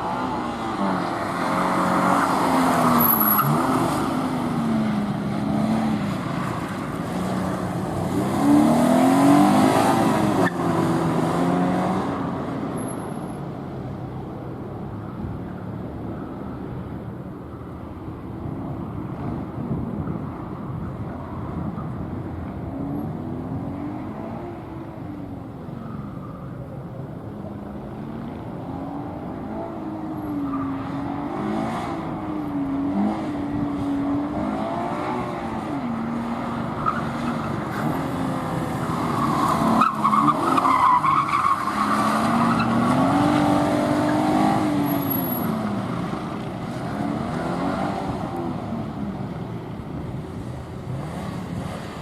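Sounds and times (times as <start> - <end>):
tyre squeal: 2.1 - 4.0.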